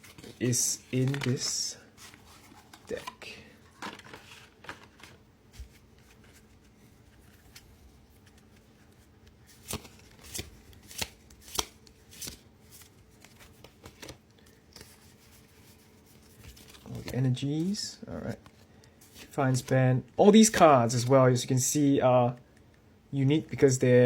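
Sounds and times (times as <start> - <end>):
trading cards rustling: 0.0 - 19.7
cards clicking and snapping: 9.6 - 12.4.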